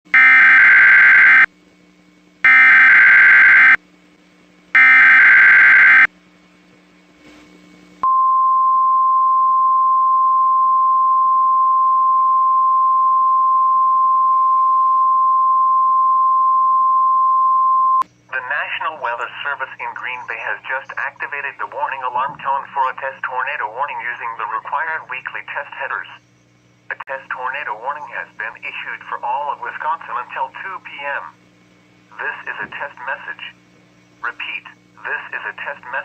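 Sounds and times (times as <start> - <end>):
single-pitch warning alarm tone: 0.1 - 1.5, 2.4 - 3.8, 4.8 - 6.1
digital data bursts: 4.8 - 6.1.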